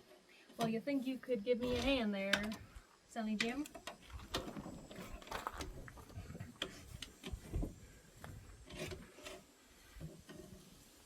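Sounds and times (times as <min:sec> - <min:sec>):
hand tools scraping metal: 0:08.5 - 0:10.7.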